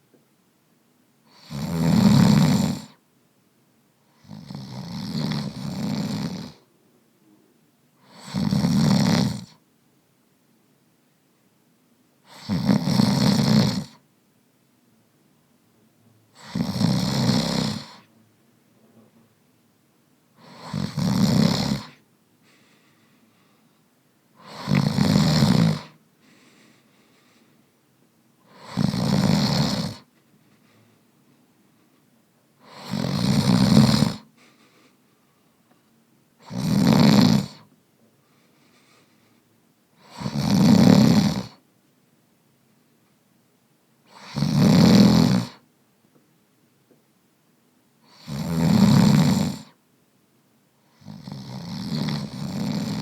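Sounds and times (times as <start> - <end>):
man snoring: 1.3 - 3.0, 4.2 - 6.7, 8.0 - 9.6, 12.2 - 14.0, 16.3 - 18.1, 20.4 - 22.0, 24.4 - 26.0, 28.5 - 30.1, 32.6 - 34.3, 36.4 - 37.7, 40.0 - 41.6, 44.1 - 45.6, 48.0 - 49.8, 50.9 - 53.0.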